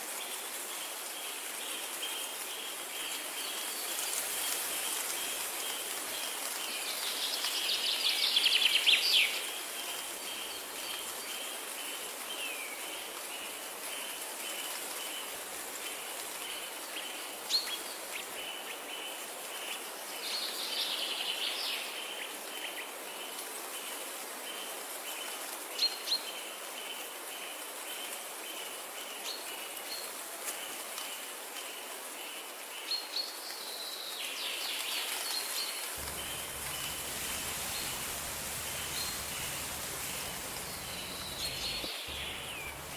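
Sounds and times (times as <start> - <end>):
background hiss: 34.4 - 42.9
bird rapid trills: 36.0 - 42.9
high pulsing chirp: 36.0 - 42.9.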